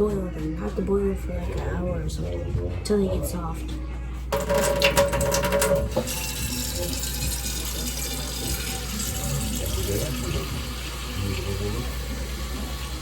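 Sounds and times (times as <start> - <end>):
tap water filling a pot: 4.4 - 13.0.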